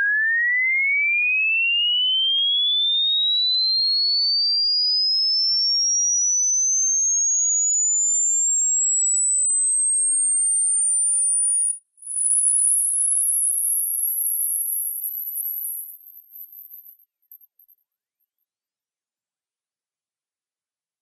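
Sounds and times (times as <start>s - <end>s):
high sine tone gliding upward: 6.6s - 17.4s.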